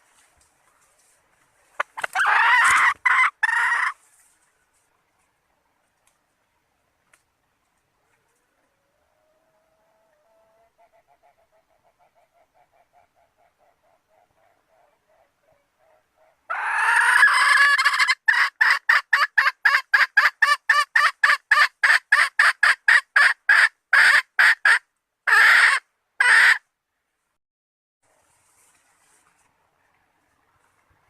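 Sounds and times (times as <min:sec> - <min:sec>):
hen clucking: 0:01.8 - 0:04.0, 0:10.0 - 0:26.6
hen squawking: 0:01.8 - 0:04.0.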